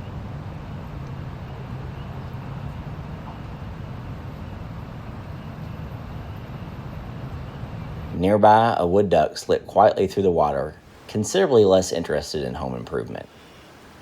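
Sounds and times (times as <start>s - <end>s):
even hiss: 10.6s - 14.0s.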